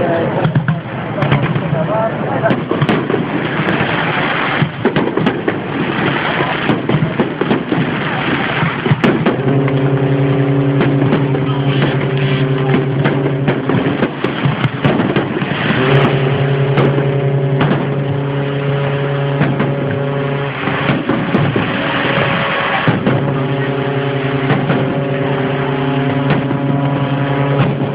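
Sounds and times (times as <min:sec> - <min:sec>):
fireworks banging and crackling: 0:00.4 - 0:27.9
deep ship's horn blasts: 0:02.6 - 0:27.9.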